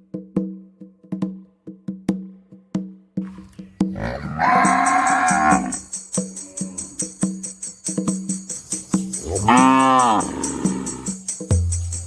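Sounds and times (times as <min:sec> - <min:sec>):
cow mooing: 0:04.0 - 0:07.1, 0:09.2 - 0:11.2
tambourine jingles: 0:04.0 - 0:12.0.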